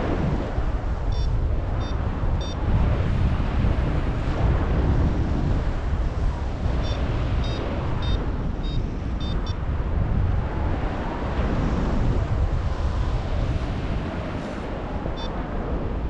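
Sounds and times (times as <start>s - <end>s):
wind buffeting microphone: 0.0s - 16.0s
short high beeps: 7.4s - 9.6s.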